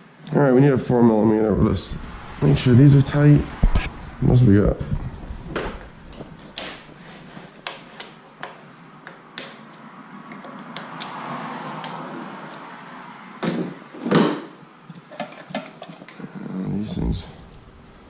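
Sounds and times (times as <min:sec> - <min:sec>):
rustling or scraping: 0:01.8 - 0:08.0
hand tools clicking and knocking: 0:14.9 - 0:16.2.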